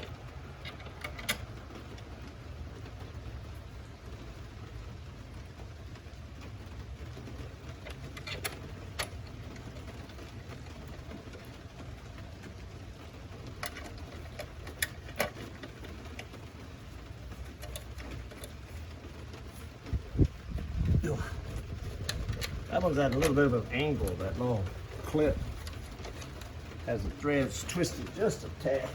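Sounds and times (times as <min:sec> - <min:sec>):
steady low hum: 0:00.0 - 0:28.9
hand tools clicking on bolts: 0:21.5 - 0:28.9.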